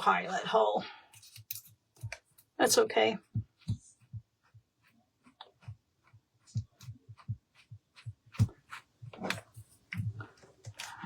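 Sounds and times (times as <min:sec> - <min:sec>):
tools clicking and knocking on table: 0:01.2 - 0:02.3.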